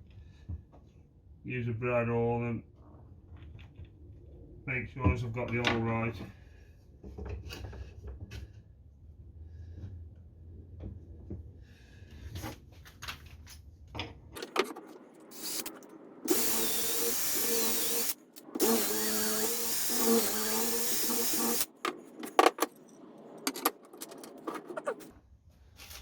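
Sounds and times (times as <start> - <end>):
electric drill boring into wood: 15.3 - 15.7, 16.3 - 21.7.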